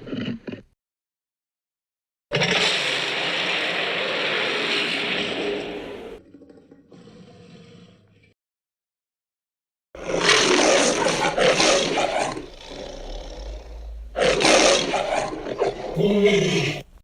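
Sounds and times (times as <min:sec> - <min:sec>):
dinosaur roars: 0:02.3 - 0:06.2, 0:10.0 - 0:16.9
rumbling growl: 0:10.0 - 0:16.9.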